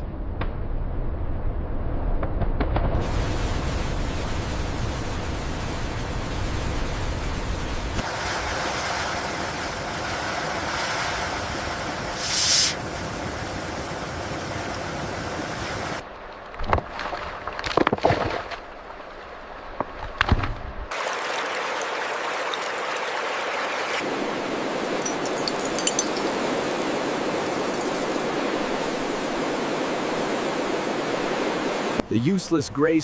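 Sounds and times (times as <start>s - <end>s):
rushing noise: 12.0s - 13.5s, 24.0s - 32.2s
pouring splashing water: 20.9s - 32.0s.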